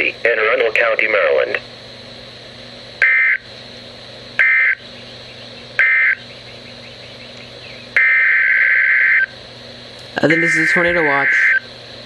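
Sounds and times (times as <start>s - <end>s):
faint radio hiss: 0.0s - 2.7s
buzzing two-tone data bursts: 3.0s - 3.4s, 4.4s - 4.8s, 5.8s - 6.2s, 8.0s - 9.4s, 10.2s - 11.7s.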